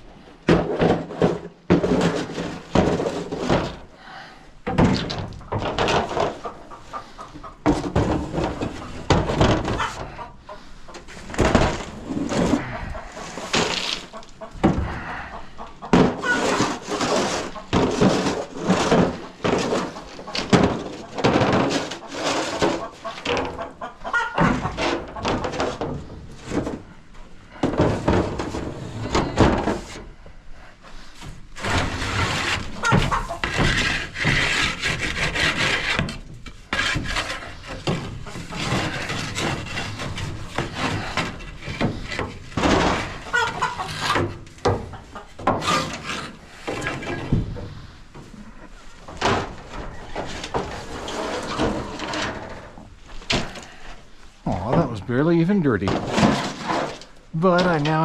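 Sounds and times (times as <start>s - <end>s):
hens clucking: 5.4s - 58.0s
metal scraper scraping wood: 15.9s - 23.2s, 31.6s - 44.8s, 45.4s - 47.4s, 49.2s - 53.8s, 55.8s - 58.0s.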